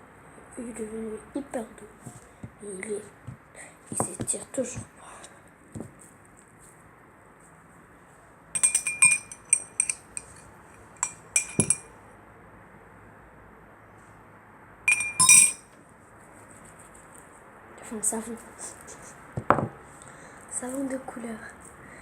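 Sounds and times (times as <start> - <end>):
utensil clinking against a bowl: 8.6 - 10.4, 11.0 - 11.9, 14.9 - 15.6.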